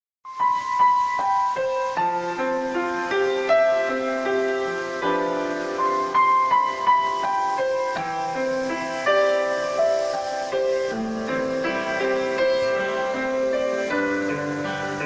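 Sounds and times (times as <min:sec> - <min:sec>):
piano playing gentle melody: 0:00.2 - 0:15.0.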